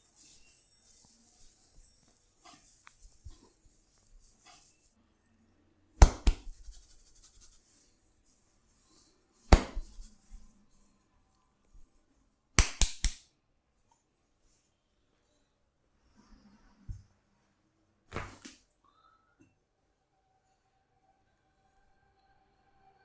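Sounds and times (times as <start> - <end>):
hand slaps on body: 6.0 - 6.6, 9.5 - 10.1, 12.6 - 13.2, 18.1 - 18.6.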